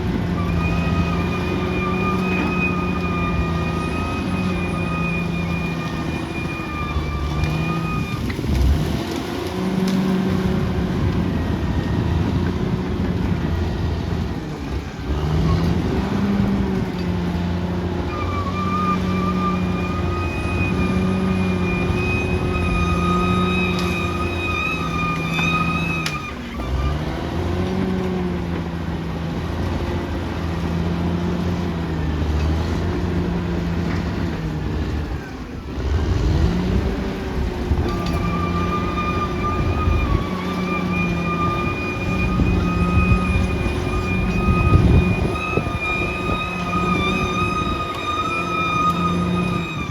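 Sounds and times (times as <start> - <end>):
bulldozer diesel engine under load: 0.0 - 49.9
high steady whine: 37.7 - 49.9.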